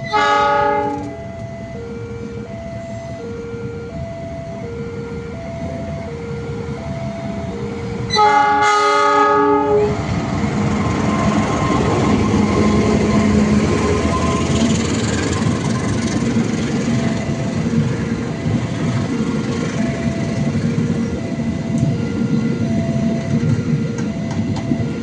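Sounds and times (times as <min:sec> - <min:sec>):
locomotive horn blast: 0:00.0 - 0:01.3, 0:08.1 - 0:10.1
train rumble: 0:00.0 - 0:25.0
two-tone crossing alarm: 0:00.0 - 0:25.0.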